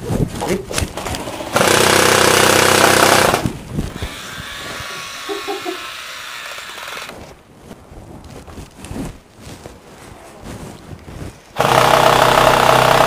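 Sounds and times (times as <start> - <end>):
airsoft gun full-auto burst: 1.2 - 5.0, 11.6 - 13.0.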